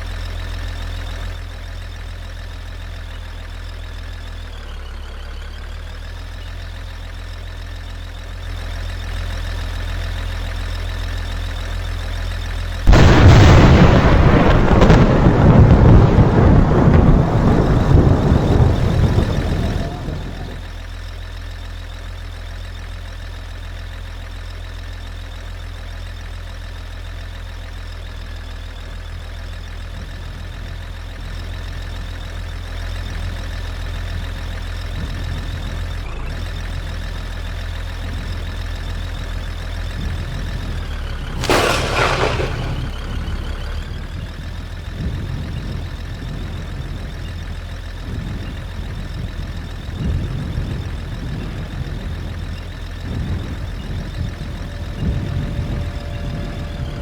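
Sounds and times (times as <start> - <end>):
vehicle driving rumble: 0.0 - 57.0
loud rush of noise: 12.9 - 20.6.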